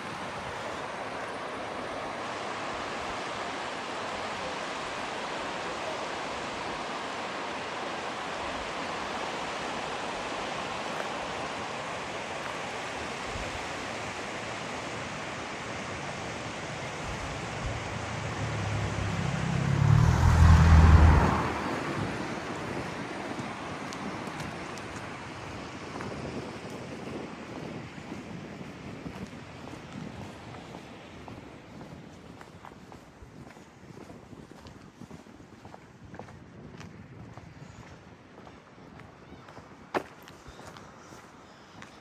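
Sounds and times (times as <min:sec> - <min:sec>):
stream rushing: 0:00.0 - 0:31.8
low rumble: 0:17.0 - 0:22.0.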